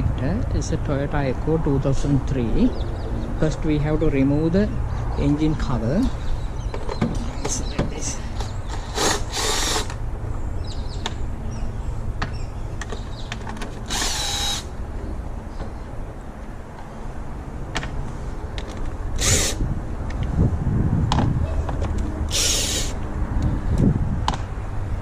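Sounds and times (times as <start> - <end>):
power drill whirring: 8.7 - 10.0, 13.9 - 14.7, 19.2 - 19.6, 22.3 - 23.0.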